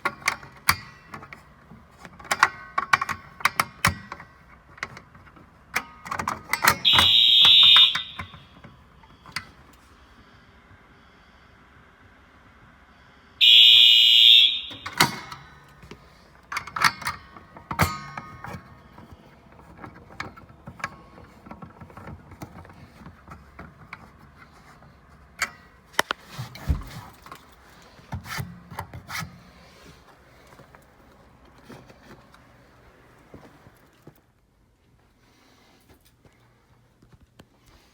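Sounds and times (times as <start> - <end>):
fire alarm horn blast: 6.8 - 8.6, 13.4 - 15.4.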